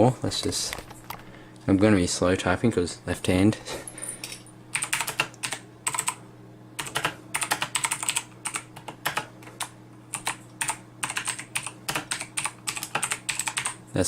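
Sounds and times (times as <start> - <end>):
steady low hum: 0.0 - 14.0
mechanical keyboard typing: 4.7 - 6.2, 6.8 - 13.8.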